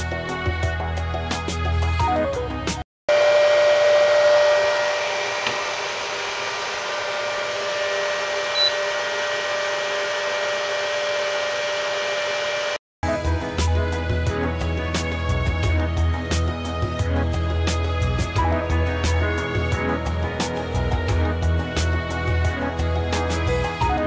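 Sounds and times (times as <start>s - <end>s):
music: 0.0s - 2.8s, 13.0s - 24.0s.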